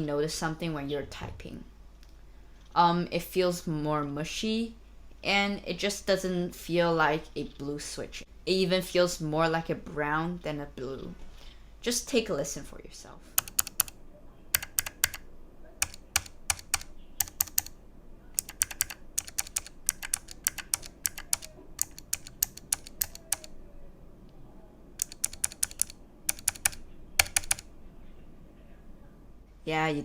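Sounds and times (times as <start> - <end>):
clicky keyboard keys: 13.4 - 15.2, 15.8 - 17.7, 18.4 - 23.6, 25.0 - 27.7.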